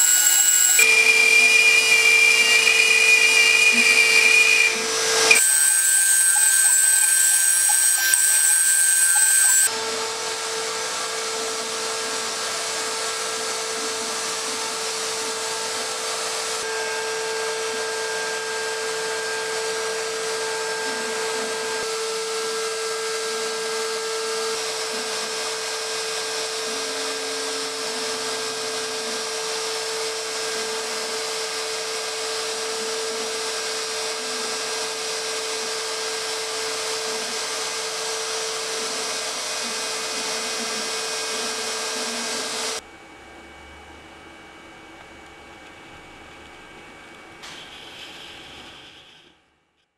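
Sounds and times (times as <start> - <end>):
constant whine: 0.0 - 9.7
low motor tones: 0.0 - 9.7
cnc router spindle and extraction noise: 0.0 - 49.2.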